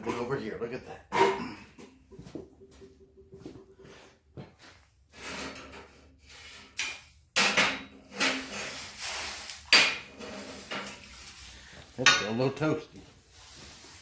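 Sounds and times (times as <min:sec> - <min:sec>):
steel pieces clinking and scraping: 0:06.8 - 0:11.4.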